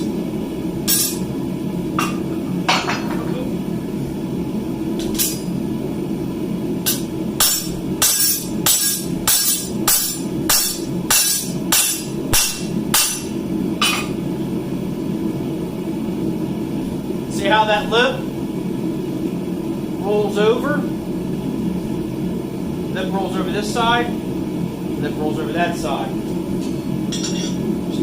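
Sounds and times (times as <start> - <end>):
constant low hum: 0.0 - 28.0
hammer striking hot steel: 0.8 - 1.3, 6.8 - 14.2, 27.1 - 27.6.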